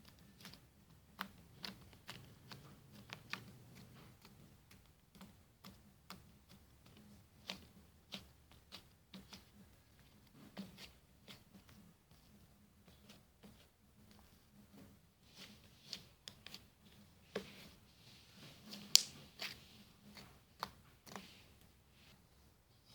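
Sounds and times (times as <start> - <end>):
slime clicking and popping: 18.9 - 19.2.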